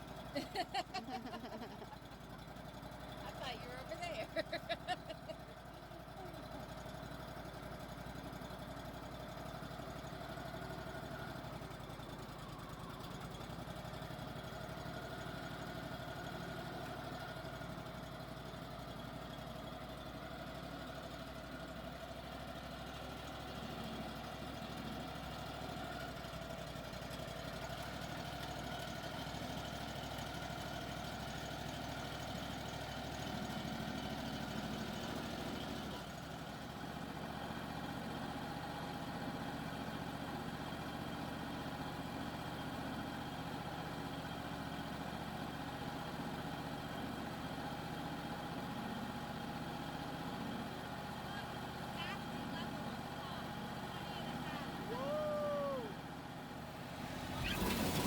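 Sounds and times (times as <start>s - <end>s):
sawmill engine running: 47.6s - 58.0s.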